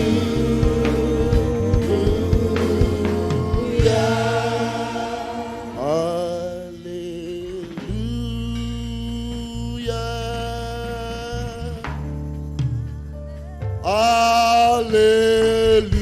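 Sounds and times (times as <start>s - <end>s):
low instrumental accompaniment: 0.0s - 11.4s
gospel singing voices: 0.0s - 12.0s, 13.8s - 16.0s.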